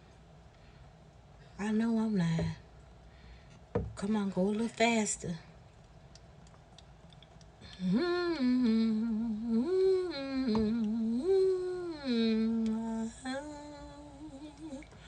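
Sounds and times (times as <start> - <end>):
woman humming: 7.7 - 14.9.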